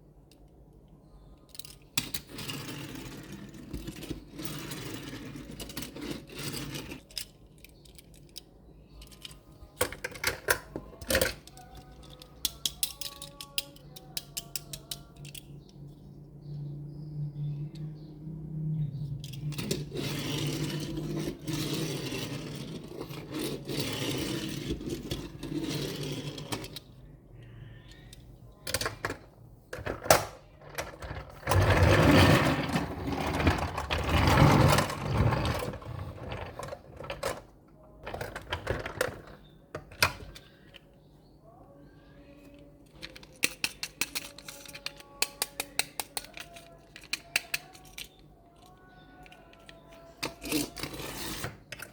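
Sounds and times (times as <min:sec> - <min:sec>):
small metal and plastic parts clicking: 0:00.2 - 0:02.6, 0:05.5 - 0:15.9, 0:42.3 - 0:51.9
toy trucks rolling and scraping: 0:01.5 - 0:15.8, 0:17.3 - 0:27.0, 0:27.7 - 0:40.8, 0:42.2 - 0:51.9.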